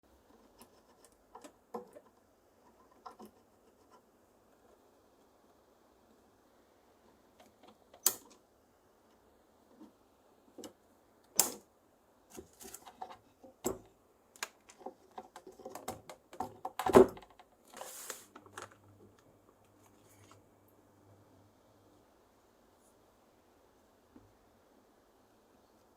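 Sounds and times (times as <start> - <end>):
scraping rustle: 17.6 - 18.8
faint low hum: 18.3 - 25.9.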